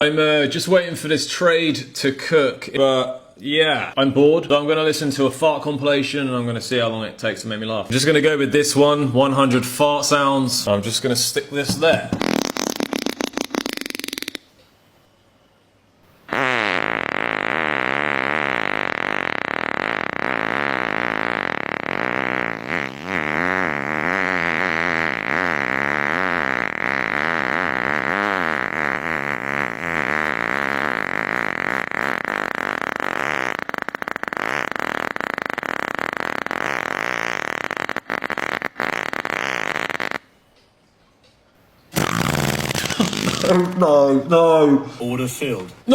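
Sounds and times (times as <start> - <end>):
fart sounds: 11.6 - 14.8, 16.1 - 40.4, 41.8 - 44.2.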